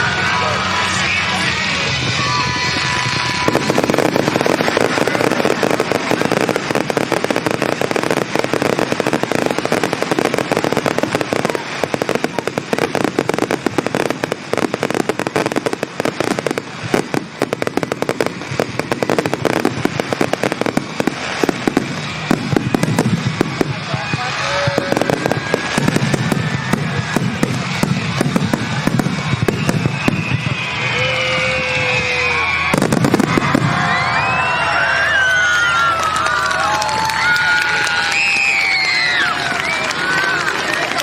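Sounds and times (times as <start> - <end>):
music: 0.0 - 4.5
fireworks crackling and popping: 0.0 - 41.0.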